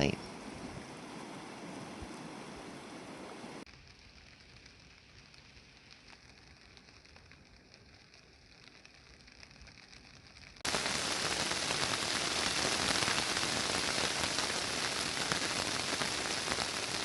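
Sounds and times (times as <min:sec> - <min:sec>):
rain falling: 0:00.0 - 0:17.0.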